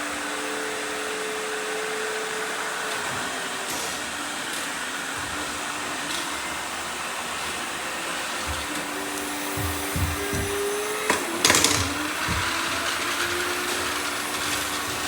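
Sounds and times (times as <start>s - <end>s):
robot vacuum motor whir: 8.2s - 15.0s
low thumps: 8.4s - 11.0s, 11.6s - 13.2s.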